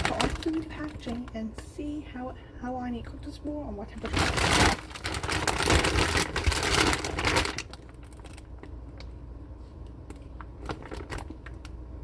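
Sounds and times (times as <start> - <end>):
plastic bag crinkling: 0.0 - 1.6, 4.0 - 9.1, 10.1 - 11.7.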